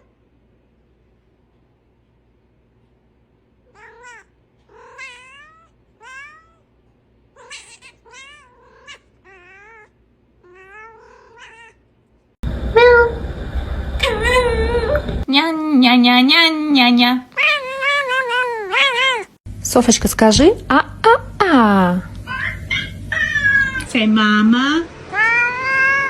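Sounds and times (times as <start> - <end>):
cat meowing: 3.7 - 6.6, 7.4 - 11.8, 14.0 - 15.0, 17.3 - 19.4, 22.3 - 23.9, 25.1 - 26.0.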